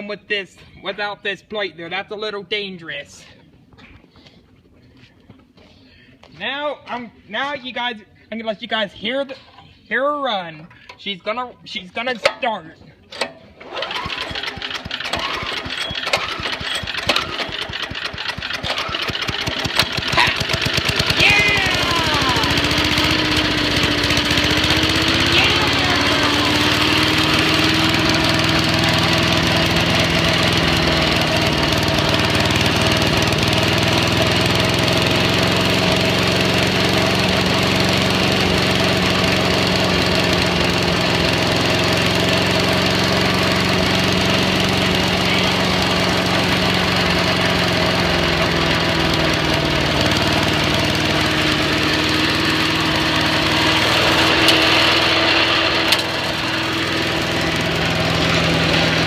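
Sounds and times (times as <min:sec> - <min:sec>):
small gasoline engine running: 0:13.2 - 0:59.0.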